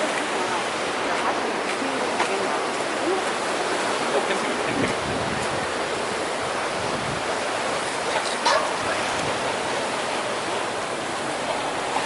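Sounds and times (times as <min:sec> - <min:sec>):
wind buffeting microphone: 0:03.0 - 0:12.0.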